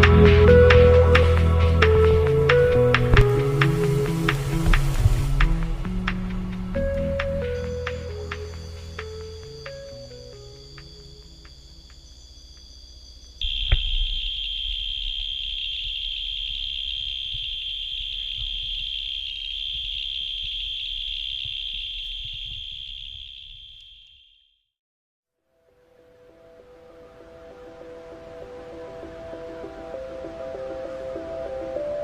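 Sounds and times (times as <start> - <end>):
low rumble: 0.0 - 12.1
soft background music: 0.0 - 12.6, 25.5 - 32.0
cicada buzz: 0.0 - 24.6.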